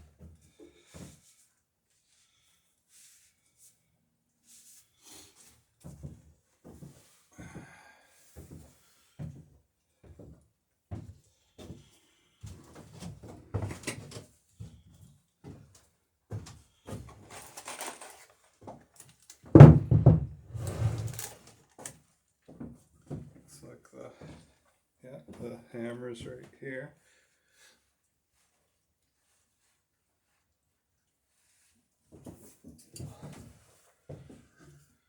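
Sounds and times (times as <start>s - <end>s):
loud thud: 19.6s - 21.1s
soft knocks: 19.6s - 21.1s.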